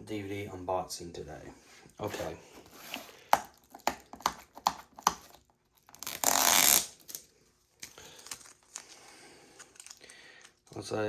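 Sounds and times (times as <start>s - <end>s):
faint handling noise: 7.0s - 11.0s.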